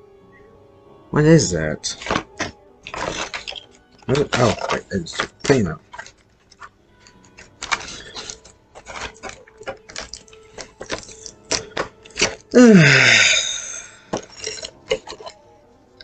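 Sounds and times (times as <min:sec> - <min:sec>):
packaging clicks and crackles: 0:01.9 - 0:12.6, 0:13.6 - 0:15.4.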